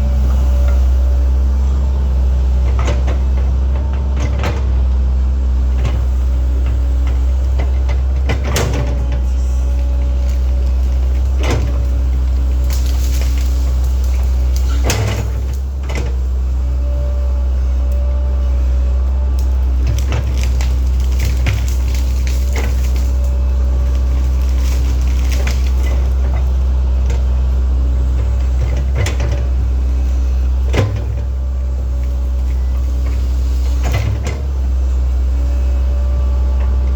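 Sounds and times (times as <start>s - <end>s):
excavator diesel engine droning: 0.0s - 36.9s
excavator bucket clanking: 6.6s - 16.2s.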